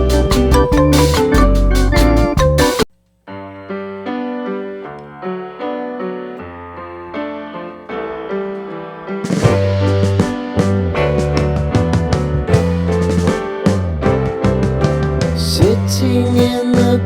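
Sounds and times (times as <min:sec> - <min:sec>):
soft keyboard chords: 0:00.0 - 0:02.9, 0:09.3 - 0:17.0
music with steady beat: 0:00.0 - 0:03.0, 0:09.3 - 0:17.0.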